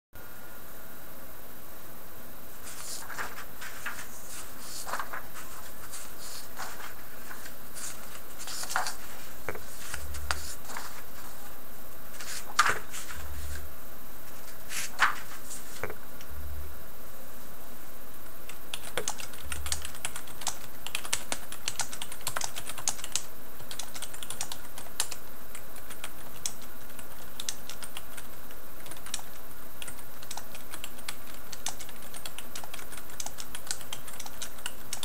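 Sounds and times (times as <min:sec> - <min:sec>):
steady hiss: 0:01.8 - 0:18.6.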